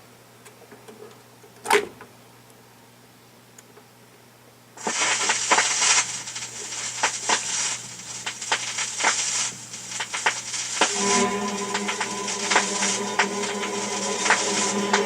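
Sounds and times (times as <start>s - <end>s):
record surface crackle and pops: 4.8s - 15.0s.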